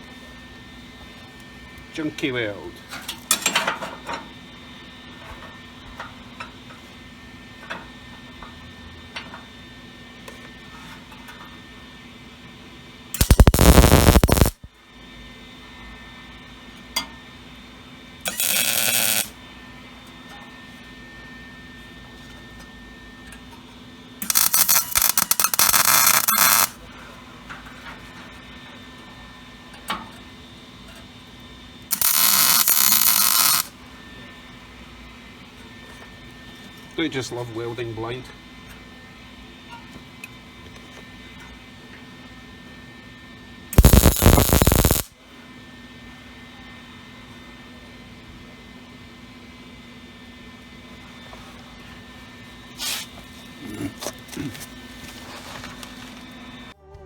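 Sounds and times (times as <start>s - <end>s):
arc welding crackle: 13.2s - 14.7s, 18.3s - 19.4s, 24.2s - 26.8s, 31.9s - 33.7s, 43.8s - 45.1s
steady low hum: 13.2s - 14.7s, 43.8s - 45.1s.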